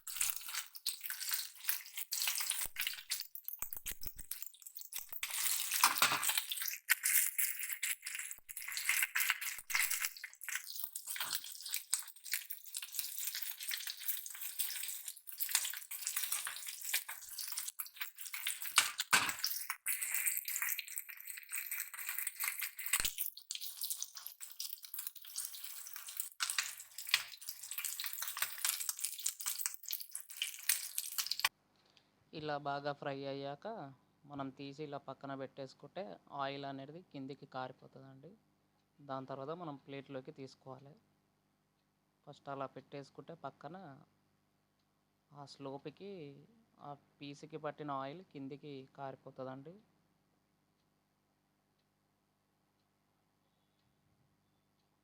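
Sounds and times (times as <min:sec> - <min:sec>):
fish frying in hot oil: 0:00.0 - 0:31.5
oil crackling and popping: 0:00.0 - 0:31.5.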